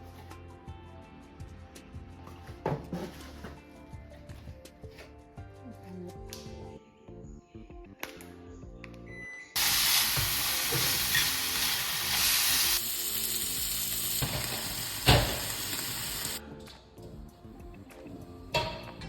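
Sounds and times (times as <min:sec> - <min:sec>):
soft background music: 0:00.0 - 0:19.0
loud sizzling hiss: 0:09.6 - 0:16.4.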